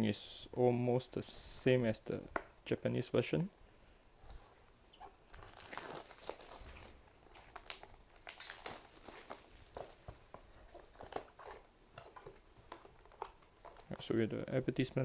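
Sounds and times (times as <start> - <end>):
packaging crinkling and tearing: 5.3 - 14.9.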